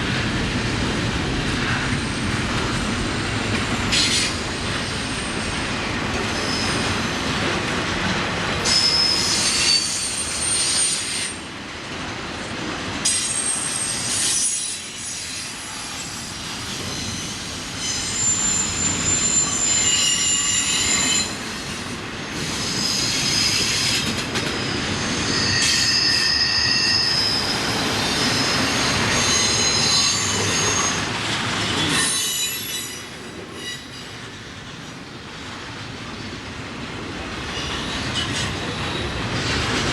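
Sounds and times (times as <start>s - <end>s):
train cars rumbling on rails: 0.0s - 39.9s
high-pitched wheel squeals: 6.4s - 7.2s, 8.6s - 11.4s, 13.2s - 21.4s, 24.6s - 31.0s, 31.8s - 34.1s.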